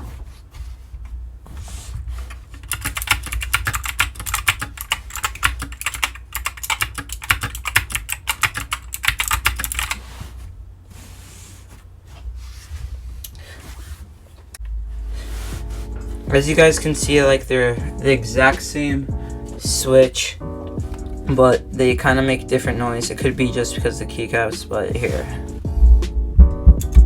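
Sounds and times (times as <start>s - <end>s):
mechanical keyboard typing: 2.6s - 10.0s
steady low hum: 8.8s - 27.0s.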